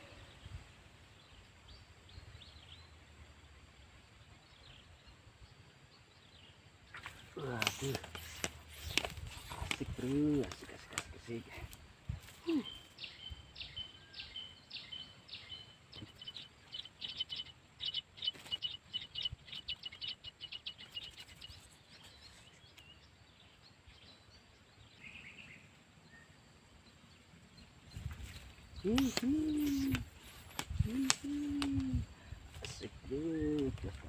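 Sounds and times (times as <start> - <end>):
bird calling: 12.3 - 22.6, 28.2 - 33.8.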